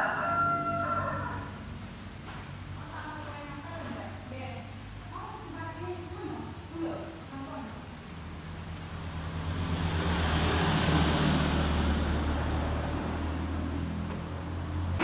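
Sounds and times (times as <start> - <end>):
road noise: 0.0 - 15.0
vehicle engine running: 8.1 - 15.0.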